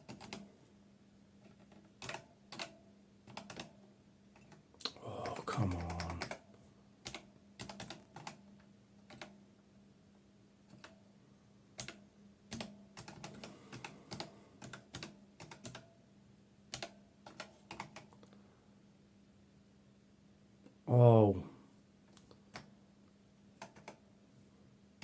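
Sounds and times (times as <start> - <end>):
computer keyboard typing: 0.0 - 0.5, 1.4 - 3.8, 5.2 - 6.4, 7.0 - 8.4, 9.1 - 9.4, 11.8 - 15.9, 16.7 - 18.3, 23.6 - 24.0
faint low hum: 0.0 - 25.0.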